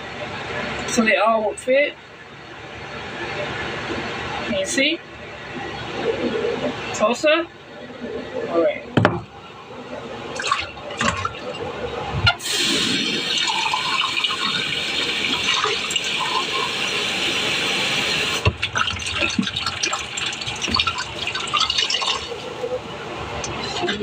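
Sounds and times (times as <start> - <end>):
tap running water into sink: 18.1 - 22.3.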